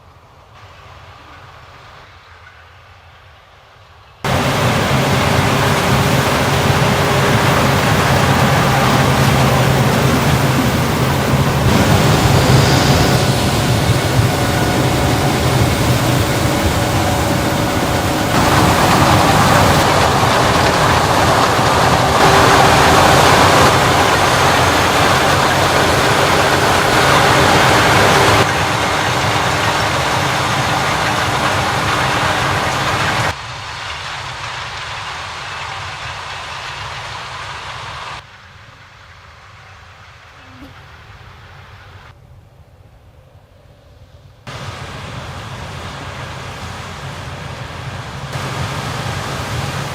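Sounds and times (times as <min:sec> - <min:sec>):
combine harvester and tractors running: 0:04.3 - 0:38.3, 0:44.5 - 0:49.9.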